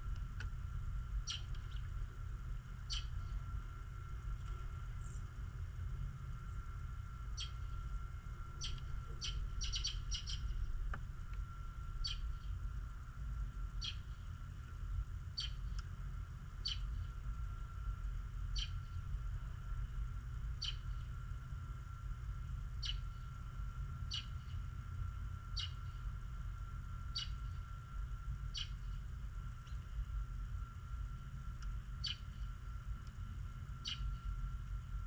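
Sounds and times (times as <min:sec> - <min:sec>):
songbirds chirping: 0:01.2 - 0:02.0, 0:02.8 - 0:05.6, 0:06.4 - 0:10.7, 0:11.4 - 0:12.6, 0:13.7 - 0:14.6, 0:15.3 - 0:15.9, 0:16.6 - 0:17.1, 0:18.5 - 0:19.0, 0:20.6 - 0:21.1, 0:22.8 - 0:23.4, 0:24.0 - 0:24.7, 0:25.4 - 0:26.1, 0:27.1 - 0:27.7, 0:28.5 - 0:30.0, 0:32.0 - 0:32.5, 0:33.8 - 0:34.4.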